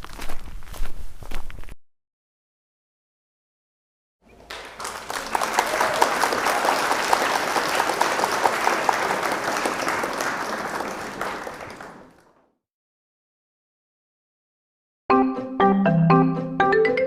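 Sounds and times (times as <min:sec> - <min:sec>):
crowd applause: 0:04.3 - 0:12.5.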